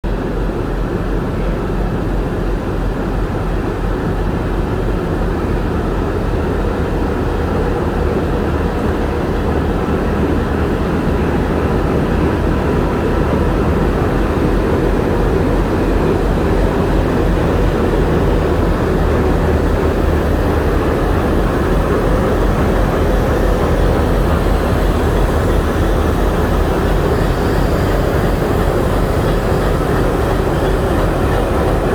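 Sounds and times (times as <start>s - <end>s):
diesel locomotive engine idling: 0.1s - 31.9s.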